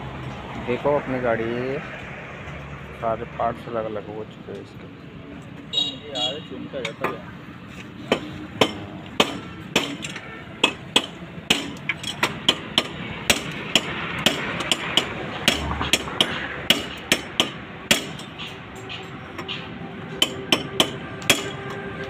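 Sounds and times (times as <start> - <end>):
hammer striking metal: 8.0 - 21.8.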